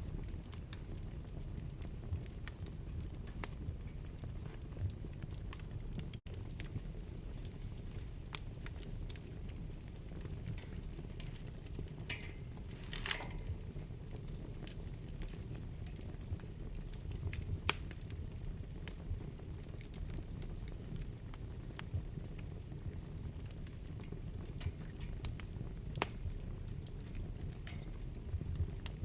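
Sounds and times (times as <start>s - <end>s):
wood fire crackling: 0.0s - 29.0s
fire hissing: 7.4s - 16.6s.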